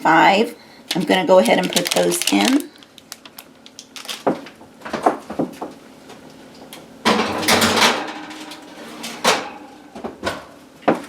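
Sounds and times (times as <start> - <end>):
baking sheet scraping rattle: 7.1 - 9.5.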